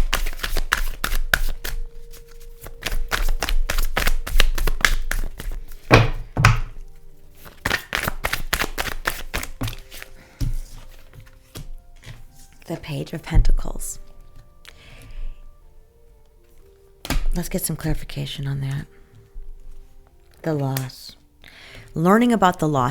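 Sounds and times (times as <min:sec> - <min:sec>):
card deck thumps: 0:00.0 - 0:06.8, 0:07.4 - 0:12.2
cards being shuffled by hand: 0:00.0 - 0:12.6
soft background music: 0:00.0 - 0:22.9.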